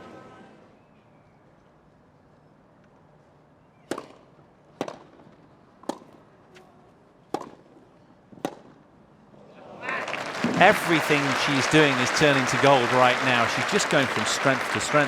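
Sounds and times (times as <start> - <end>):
tennis racket hitting ball: 7.3 - 7.6.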